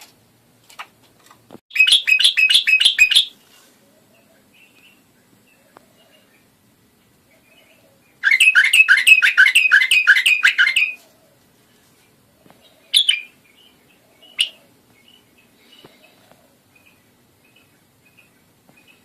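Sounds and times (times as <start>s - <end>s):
bird sharp chirps: 1.7s - 3.4s, 7.4s - 11.0s, 12.6s - 15.9s.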